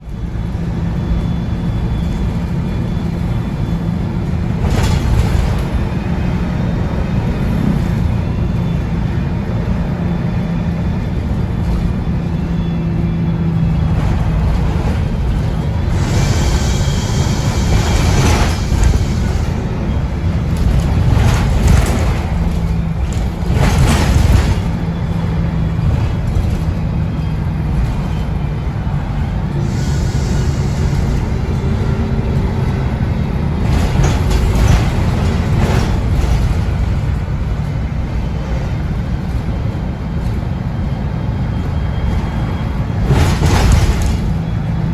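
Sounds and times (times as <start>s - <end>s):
bus diesel engine running: 0.0s - 44.9s
short hissy bursts: 15.9s - 19.6s, 29.6s - 31.6s.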